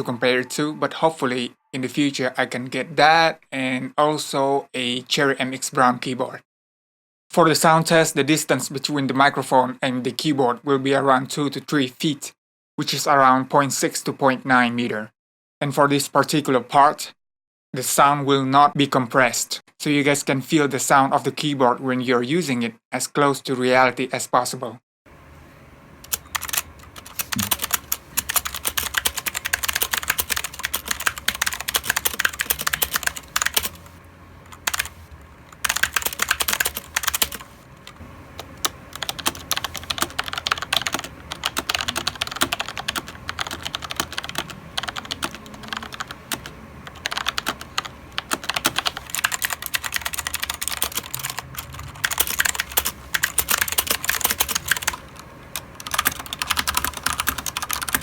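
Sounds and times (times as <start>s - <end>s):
mechanical keyboard typing: 26.0s - 58.0s.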